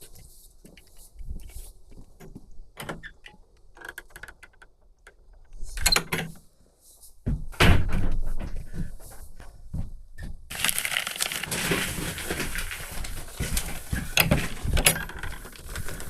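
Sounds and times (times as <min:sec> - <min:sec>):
knocks and clatter of handling: 0:10.5 - 0:16.0
rushing scrape: 0:10.6 - 0:14.0.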